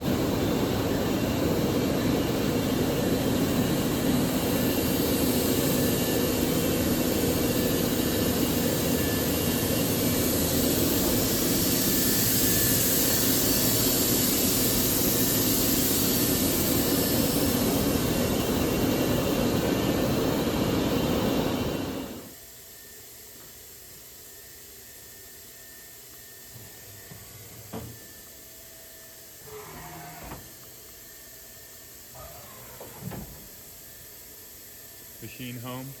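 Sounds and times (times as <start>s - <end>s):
loud machinery hissing: 0.0s - 22.4s.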